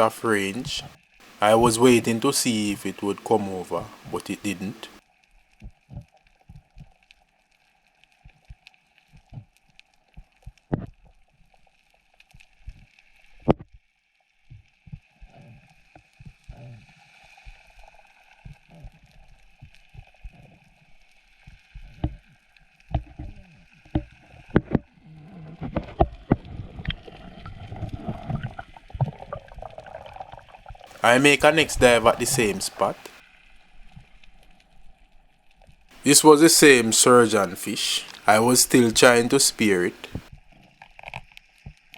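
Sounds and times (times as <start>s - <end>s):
faint underwater hum: 0.0s - 5.0s, 24.9s - 35.1s, 36.0s - 40.3s
muffled thumps and water movement: 5.6s - 6.9s, 22.8s - 33.2s, 40.0s - 40.5s.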